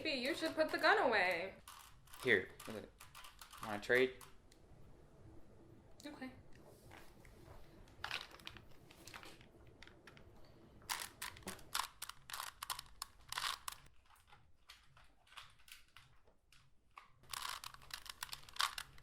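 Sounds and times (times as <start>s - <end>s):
puzzle cube clicking: 10.9s - 13.9s, 17.2s - 19.0s.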